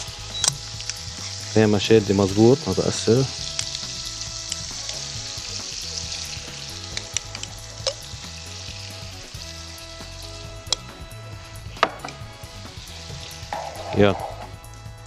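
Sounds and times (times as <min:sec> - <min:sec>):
sauce sizzling in a frying pan: 0:00.0 - 0:15.0
utensil clicking against pan: 0:03.4 - 0:05.1, 0:06.8 - 0:08.1.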